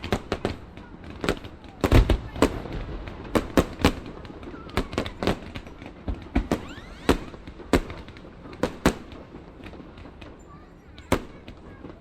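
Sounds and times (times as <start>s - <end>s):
fireworks bangs: 0.0s - 12.0s
faint firework whistle: 6.4s - 7.4s.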